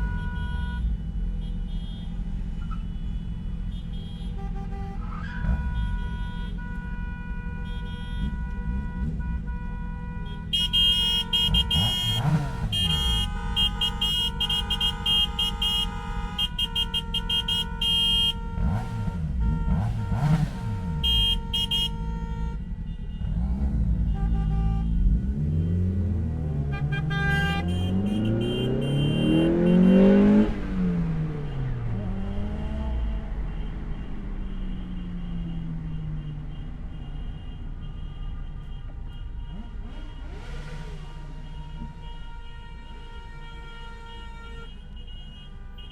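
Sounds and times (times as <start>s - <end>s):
car horns honking: 0.0s - 45.9s
traffic engine rumble: 0.0s - 45.9s
engine revving: 11.2s - 15.6s, 18.5s - 21.8s, 23.2s - 34.2s.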